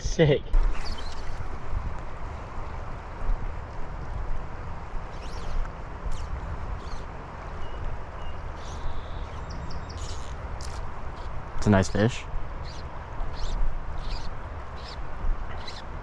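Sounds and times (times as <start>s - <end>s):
river water flowing: 0.5s - 16.0s
high chirps: 12.6s - 15.9s.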